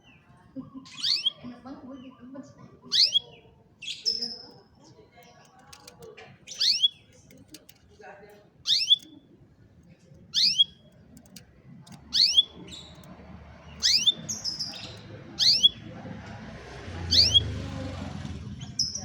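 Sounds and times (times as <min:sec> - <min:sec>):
canary chirping: 0:00.0 - 0:07.8, 0:08.6 - 0:09.4, 0:10.2 - 0:19.0.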